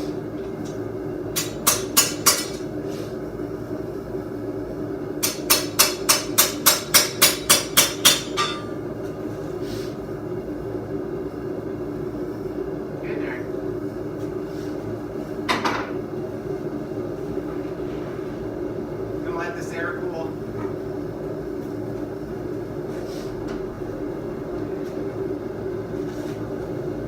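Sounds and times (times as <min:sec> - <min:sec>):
steady hum: 0:00.0 - 0:27.0
hammer ringing on anvil: 0:05.2 - 0:08.8.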